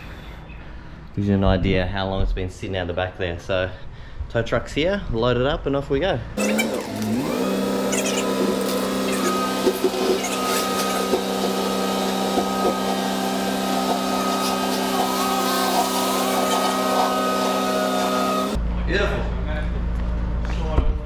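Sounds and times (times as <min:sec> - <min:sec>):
hydraulic pump and winch running: 0:06.4 - 0:18.6.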